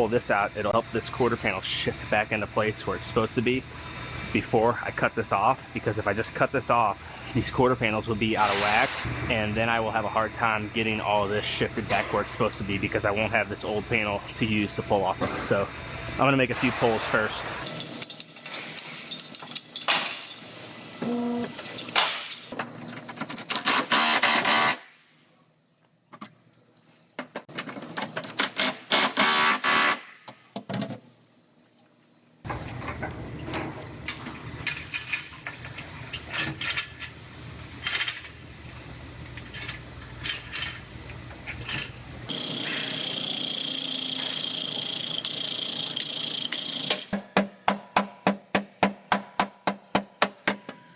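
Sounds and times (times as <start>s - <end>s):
steady machine hum: 0.0s - 17.8s, 37.6s - 47.1s
chain rattles: 17.6s - 20.6s.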